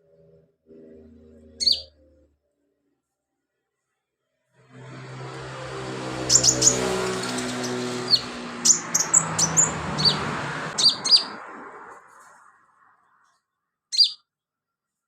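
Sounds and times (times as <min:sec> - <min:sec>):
bird chirping and trilling: 0:01.4 - 0:02.1, 0:06.2 - 0:11.4, 0:13.9 - 0:14.3.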